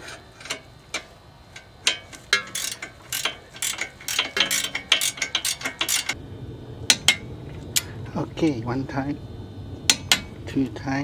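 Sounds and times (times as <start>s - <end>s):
ratchet wrench clicking: 0.0s - 6.2s.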